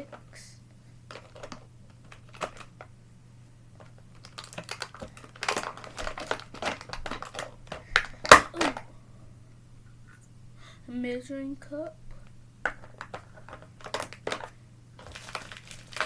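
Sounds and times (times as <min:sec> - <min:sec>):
plastic packaging crinkling: 0:01.1 - 0:02.9, 0:03.7 - 0:08.9, 0:12.6 - 0:16.0.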